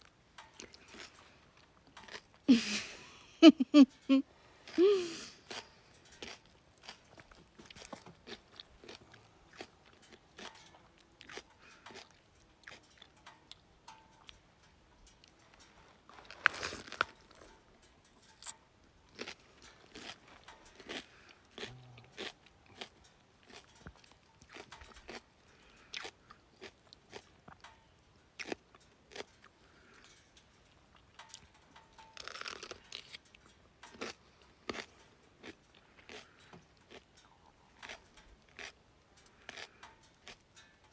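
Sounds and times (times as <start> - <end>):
wet crunching chews: 0.4 - 2.5, 4.6 - 14.4, 15.0 - 40.9
crunchy cucumber bite: 16.3 - 17.5, 32.2 - 33.2.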